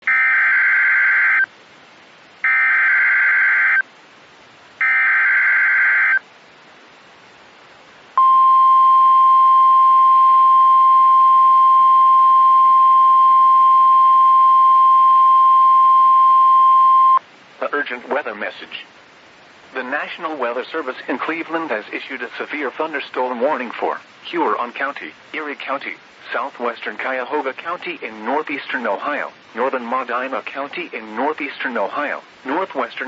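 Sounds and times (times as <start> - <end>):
steady warning alarm tone: 0.0 - 1.5, 2.4 - 3.8, 4.8 - 6.2.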